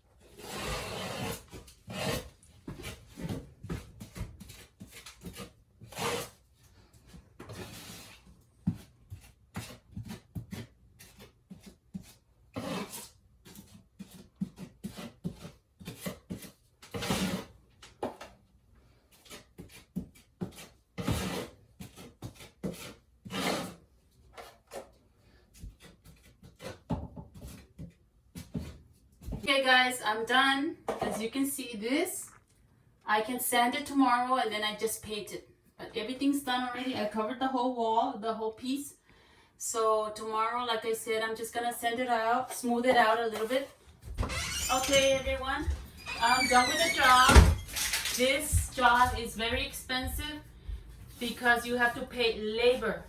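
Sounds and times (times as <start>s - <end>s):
putty knife scraping compound: 0.2s - 18.3s, 19.0s - 29.4s.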